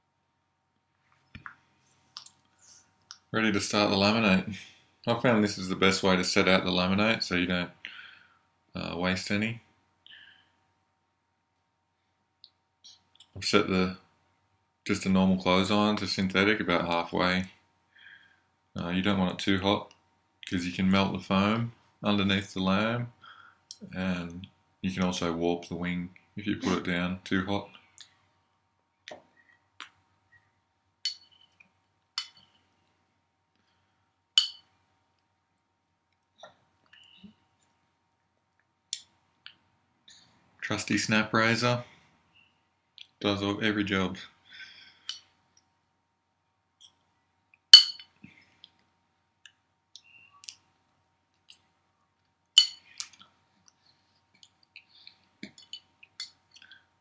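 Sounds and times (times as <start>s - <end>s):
faint steady hum: 0.0s - 57.0s
sharp ringing clinks: 34.4s - 34.7s, 47.8s - 48.2s, 52.6s - 53.0s.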